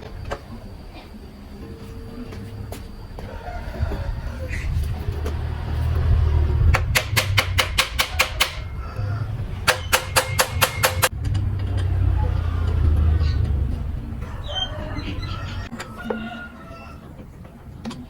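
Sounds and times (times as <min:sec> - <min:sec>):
steady low rumble: 0:00.0 - 0:15.7
rapid even clicking: 0:09.7 - 0:11.9.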